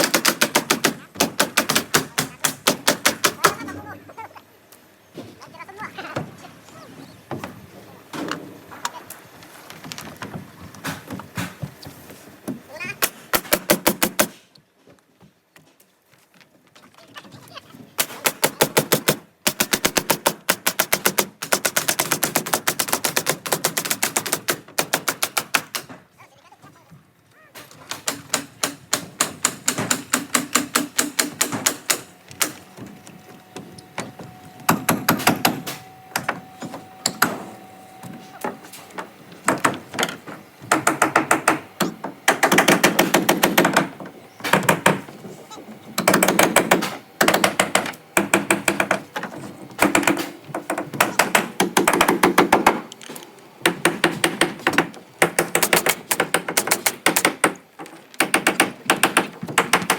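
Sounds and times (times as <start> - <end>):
nail gun firing: 0.0 - 3.6, 13.0 - 14.4, 18.0 - 26.0, 27.6 - 32.6, 34.7 - 37.6, 39.4 - 45.1, 46.0 - 49.1, 49.8 - 59.9.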